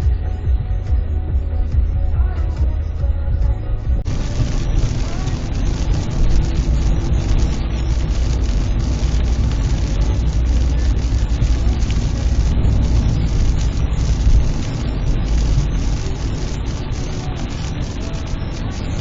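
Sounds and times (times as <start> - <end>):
car engine rumbling: 0.0 - 19.0
rain hiss: 4.0 - 19.0.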